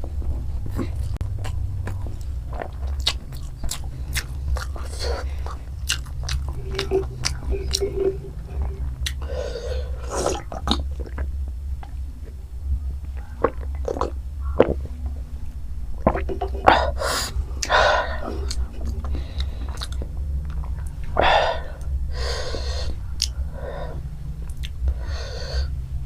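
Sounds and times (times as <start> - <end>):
steady low hum: 0.0 - 26.0
chewing noodles: 0.7 - 12.4, 16.0 - 21.1, 24.5 - 24.8
wet mouth clicks and smacks: 1.3 - 9.2, 18.4 - 21.2, 23.2 - 23.4, 24.4 - 24.8.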